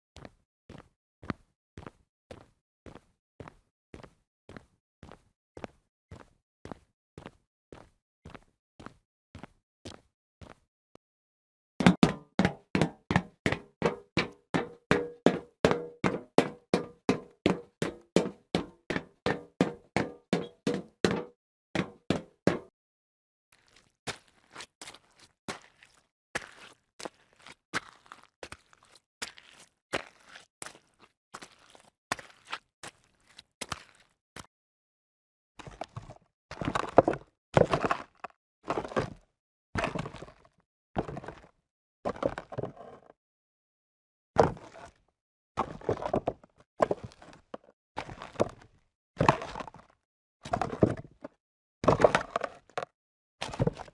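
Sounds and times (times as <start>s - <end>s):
footsteps on hard surface: 11.8s - 22.7s.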